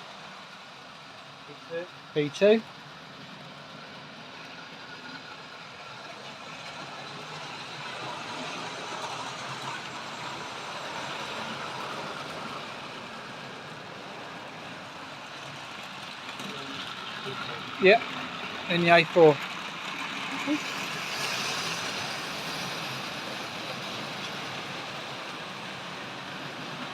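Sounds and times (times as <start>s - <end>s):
model train running on track: 0.0s - 26.9s.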